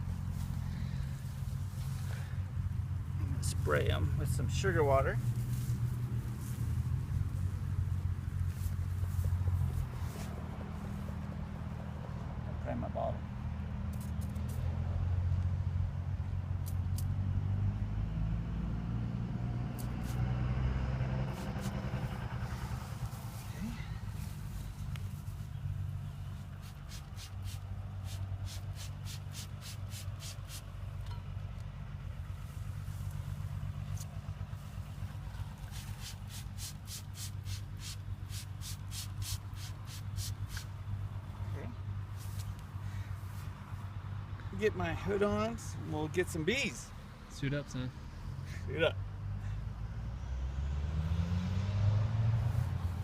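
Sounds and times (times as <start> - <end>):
steady low rumble: 0.0 - 14.7, 21.2 - 45.6
spray bottle hissing squirts: 26.6 - 30.7, 35.6 - 40.7.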